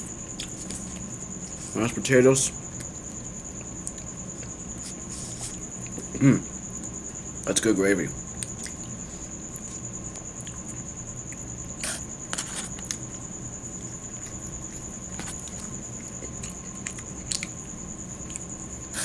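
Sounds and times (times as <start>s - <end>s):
person chewing food: 0.0s - 1.8s, 2.5s - 7.4s, 8.2s - 19.0s
cricket trilling: 0.0s - 19.0s.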